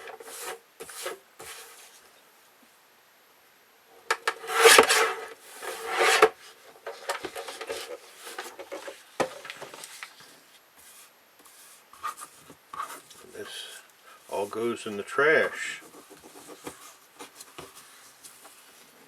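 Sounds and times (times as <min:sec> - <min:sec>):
paper rustling: 0:04.3 - 0:19.0.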